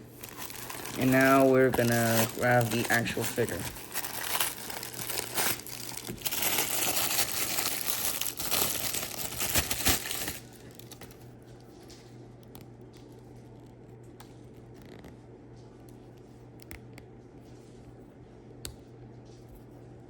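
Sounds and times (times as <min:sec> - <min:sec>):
plastic packaging crinkling: 0:00.0 - 0:11.4.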